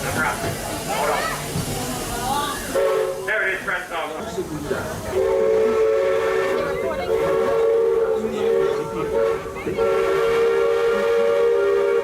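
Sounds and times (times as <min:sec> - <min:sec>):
steam whistle blast: 0:02.8 - 0:03.2, 0:05.2 - 0:12.0.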